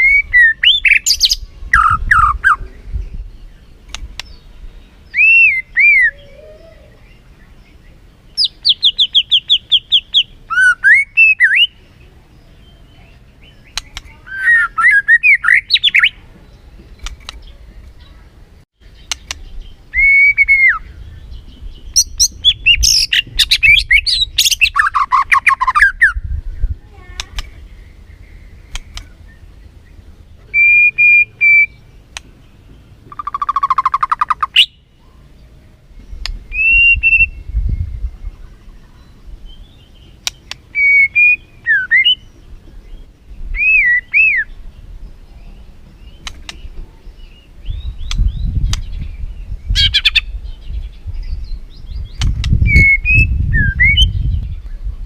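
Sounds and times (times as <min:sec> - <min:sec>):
songbird singing: 0:00.0 - 0:55.0
bird sharp clicks: 0:03.9 - 0:04.4, 0:13.6 - 0:14.2, 0:16.9 - 0:17.6, 0:19.0 - 0:19.5, 0:27.1 - 0:27.6, 0:28.6 - 0:29.2, 0:32.1 - 0:32.4, 0:36.2 - 0:36.4, 0:40.2 - 0:40.9, 0:46.1 - 0:46.8, 0:48.0 - 0:49.0, 0:52.1 - 0:52.8.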